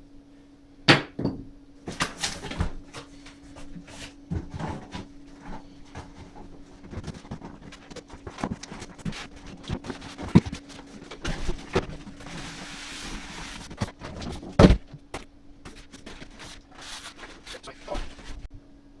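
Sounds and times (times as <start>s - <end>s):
cardboard knocking and scraping: 0.9s - 10.6s
packing rustle: 1.9s - 18.4s.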